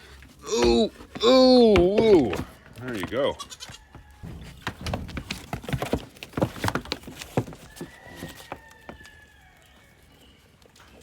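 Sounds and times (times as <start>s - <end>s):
goat hooves knocking on stand: 0.6s - 9.1s.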